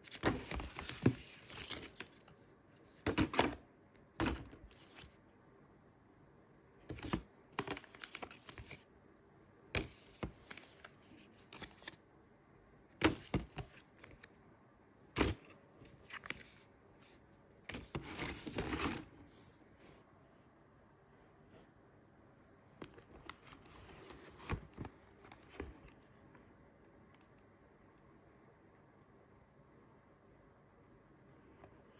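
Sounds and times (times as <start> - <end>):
paper and cardboard rustling: 0.0 - 3.4, 4.2 - 5.2, 6.9 - 8.8, 9.8 - 12.0, 15.9 - 19.1.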